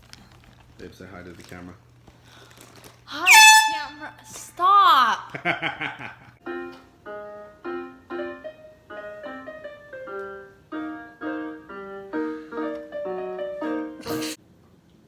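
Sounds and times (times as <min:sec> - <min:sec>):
piano chords: 0:06.4 - 0:14.0.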